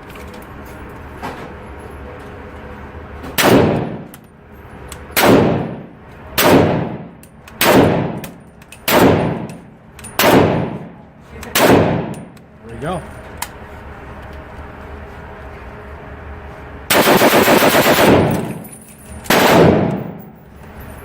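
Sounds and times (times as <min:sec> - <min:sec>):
rifle gunshots with echo: 0:03.4 - 0:04.1, 0:05.2 - 0:08.3, 0:08.9 - 0:09.6, 0:10.2 - 0:12.3, 0:16.9 - 0:18.6, 0:19.3 - 0:20.2.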